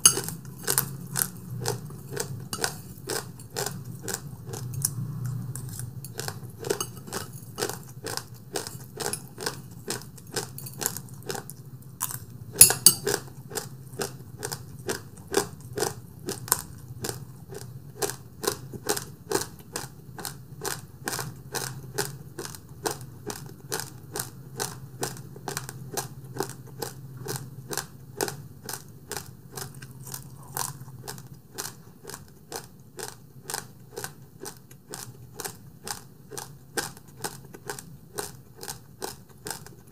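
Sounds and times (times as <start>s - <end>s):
low steady hum: 0.0s - 39.9s.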